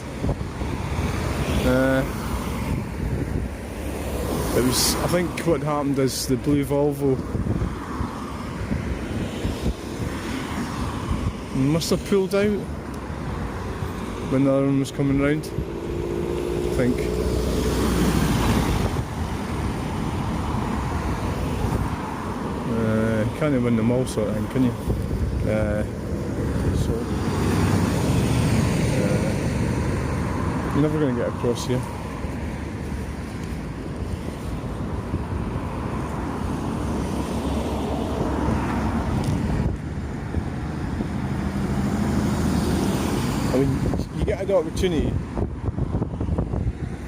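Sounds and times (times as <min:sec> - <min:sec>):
traffic rumble of engines and tyres: 0:00.0 - 0:47.0
vehicle passing close: 0:12.3 - 0:44.3.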